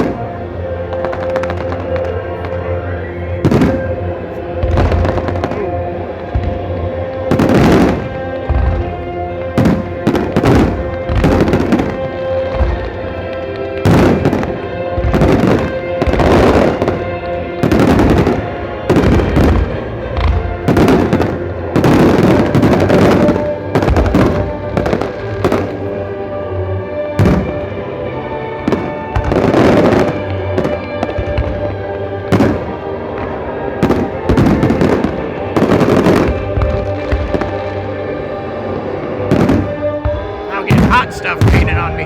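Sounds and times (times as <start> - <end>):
music playing: 0.0 - 42.0
fireworks booming: 4.6 - 13.0, 39.3 - 42.0.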